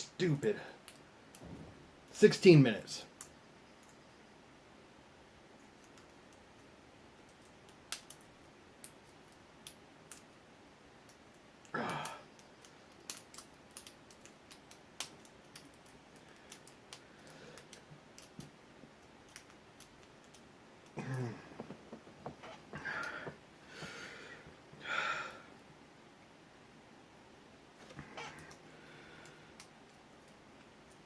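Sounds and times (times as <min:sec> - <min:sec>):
person breathing: 0:16.2 - 0:17.8, 0:22.7 - 0:25.6, 0:28.0 - 0:29.6.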